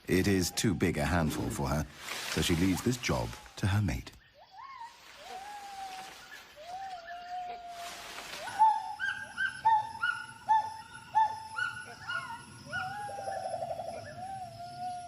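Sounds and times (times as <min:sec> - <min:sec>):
gibbon hooting: 0:08.5 - 0:15.0.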